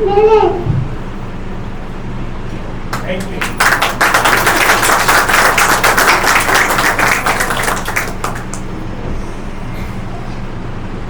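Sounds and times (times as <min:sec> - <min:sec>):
steady low hum: 0:00.0 - 0:11.0
audience clapping: 0:02.9 - 0:09.0.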